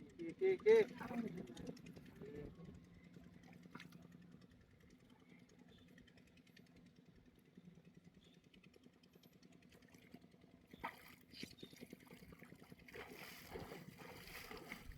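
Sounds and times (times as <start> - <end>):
faint low hum: 10.8 - 14.9.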